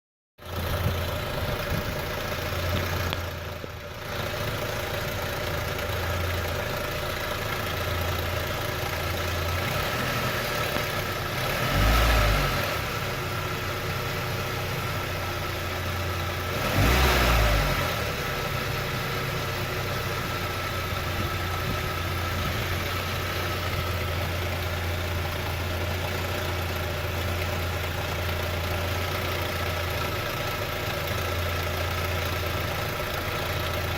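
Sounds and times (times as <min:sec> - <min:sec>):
car engine idling with knock: 0:00.4 - 0:09.8, 0:18.4 - 0:33.9.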